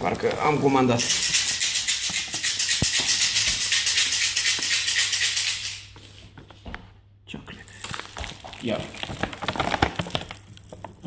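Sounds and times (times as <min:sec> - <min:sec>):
powder rattling in plastic tub: 0:07.9 - 0:11.0.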